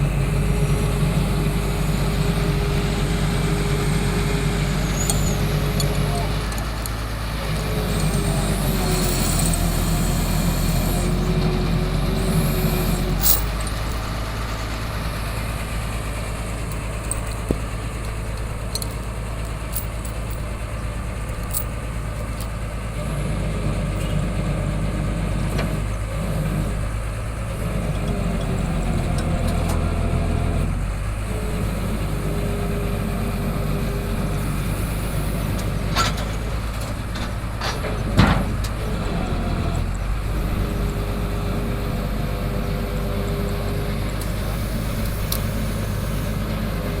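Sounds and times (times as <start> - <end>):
diesel engine running: 0.0 - 47.0
sharp metallic clinks: 7.9 - 11.2.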